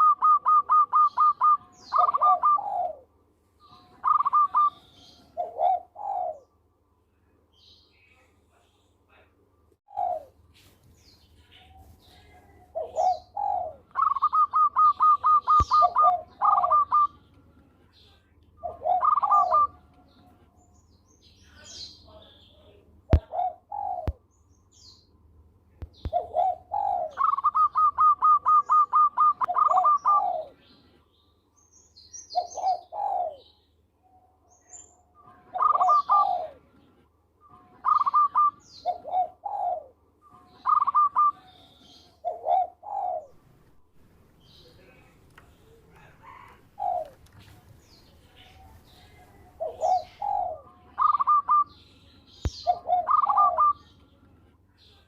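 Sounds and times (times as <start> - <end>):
faint high bird chirps: 0.0 - 3.0, 3.6 - 9.0, 9.6 - 25.2, 25.8 - 43.4, 44.4 - 55.0
dove cooing: 0.0 - 3.1, 3.7 - 6.6, 9.9 - 10.4, 11.7 - 17.2, 18.6 - 20.2, 23.1 - 24.2, 26.0 - 30.6, 32.3 - 33.5, 35.2 - 43.5, 45.0 - 51.8, 52.5 - 53.9.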